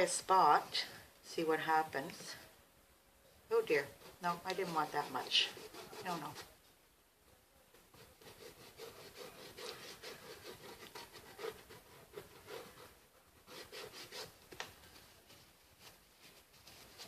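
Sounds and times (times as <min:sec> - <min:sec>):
paint rubbing on cardboard: 0:03.6 - 0:06.6, 0:07.7 - 0:17.0.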